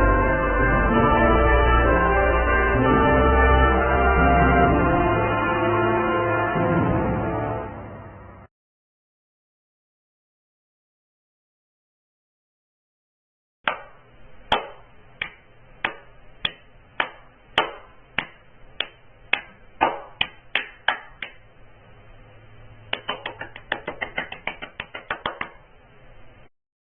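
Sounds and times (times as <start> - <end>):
hand claps: 13.7 - 21.5, 22.9 - 25.7.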